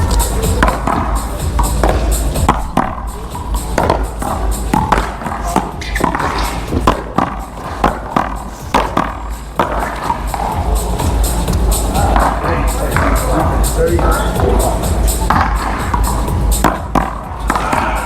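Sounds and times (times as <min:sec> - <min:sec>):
paddles striking ball: 0:00.0 - 0:10.6, 0:11.5 - 0:13.5, 0:15.2 - 0:18.0
background music: 0:00.0 - 0:18.0
ball hitting wall: 0:03.8 - 0:10.4, 0:15.3 - 0:18.0.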